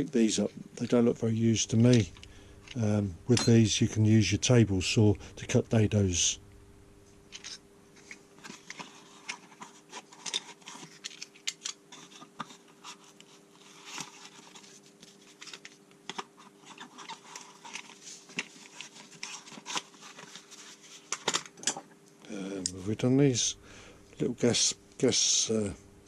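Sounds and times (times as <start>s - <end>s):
faint hum: 0.0s - 21.2s, 21.8s - 26.0s
metal tools clicking and scraping: 1.9s - 3.6s.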